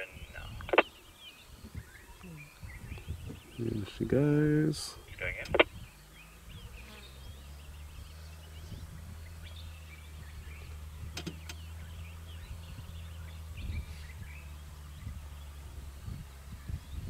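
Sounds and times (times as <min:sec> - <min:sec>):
small birds chirping: 0:00.0 - 0:17.0
vehicle engine idling: 0:00.0 - 0:17.0
sharp clicks: 0:00.6 - 0:00.9, 0:05.4 - 0:05.7, 0:11.1 - 0:11.6.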